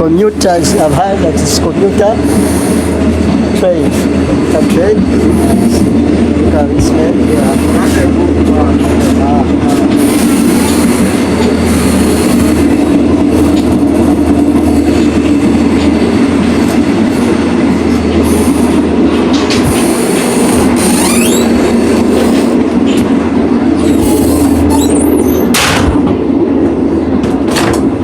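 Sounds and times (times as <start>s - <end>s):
train wheels rumbling on rails: 0.0s - 28.0s
high-pitched wheel squeals: 20.8s - 21.6s, 23.8s - 25.5s.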